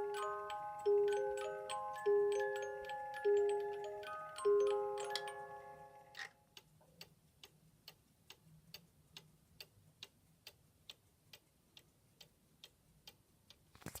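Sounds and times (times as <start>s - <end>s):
cuckoo clock tune: 0.0s - 6.4s
cuckoo clock ticking: 0.0s - 13.7s.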